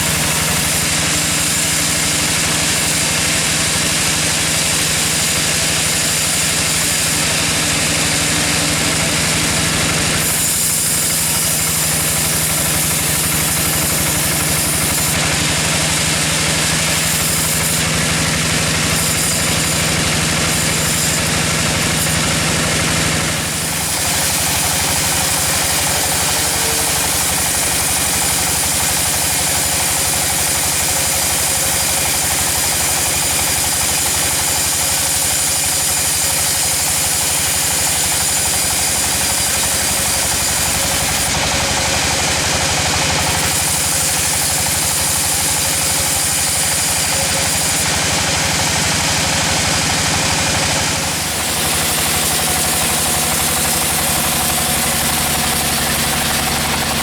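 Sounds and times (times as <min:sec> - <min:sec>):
sawmill engine running: 0:00.0 - 0:57.0.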